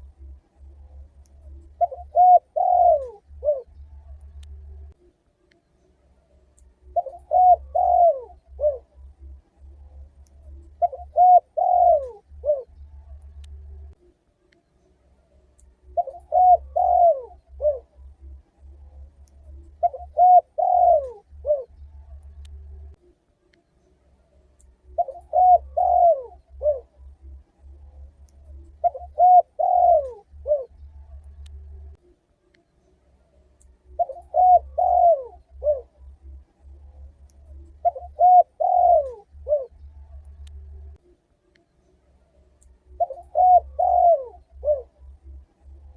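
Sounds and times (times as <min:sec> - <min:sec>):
faint low hum: 0:00.0 - 0:45.9
dove cooing: 0:00.9 - 0:03.8, 0:06.8 - 0:09.4, 0:10.4 - 0:12.7, 0:15.8 - 0:21.8, 0:24.9 - 0:30.8, 0:33.9 - 0:39.8, 0:42.9 - 0:45.8.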